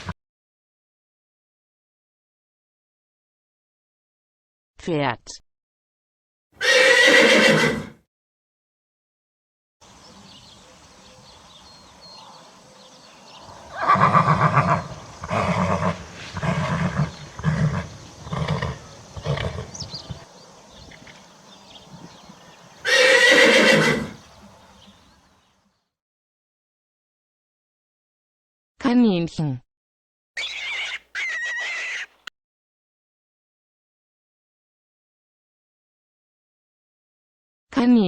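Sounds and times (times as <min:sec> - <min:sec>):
horse neighing: 0:06.6 - 0:08.0, 0:13.2 - 0:25.0, 0:30.4 - 0:32.3.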